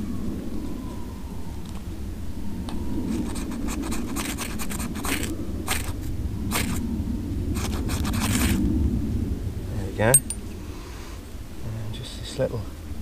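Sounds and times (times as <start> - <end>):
ferro rod scraping knife spine: 3.1 - 6.8, 7.5 - 8.6.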